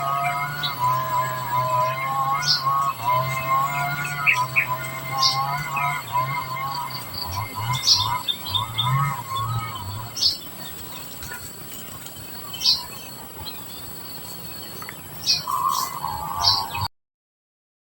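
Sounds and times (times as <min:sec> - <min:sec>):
finches chirping: 0:00.0 - 0:16.9
soft bird warbling: 0:15.3 - 0:16.8.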